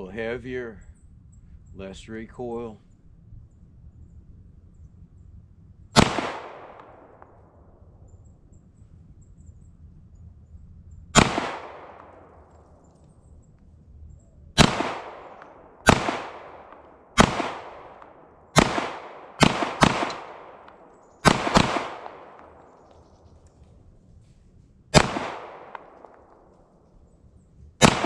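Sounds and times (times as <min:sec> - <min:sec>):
pistol shots with echo: 0:06.0 - 0:07.8, 0:11.1 - 0:12.8, 0:14.6 - 0:23.0, 0:24.9 - 0:26.8, 0:27.8 - 0:28.0.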